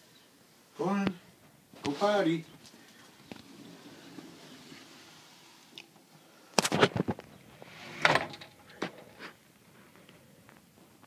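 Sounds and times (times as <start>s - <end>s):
door sliding: 3.0s - 5.7s, 7.6s - 9.3s.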